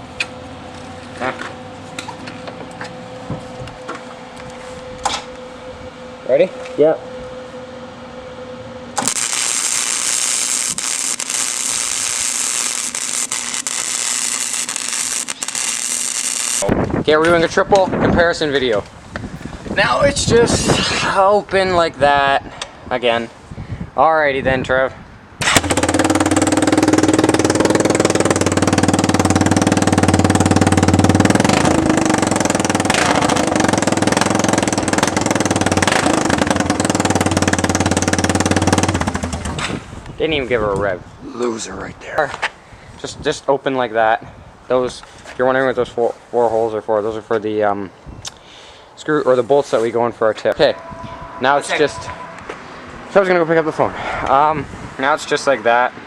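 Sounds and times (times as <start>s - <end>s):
arc welding crackle: 9.0s - 16.7s, 25.6s - 39.2s
atv engine idling: 25.6s - 39.6s.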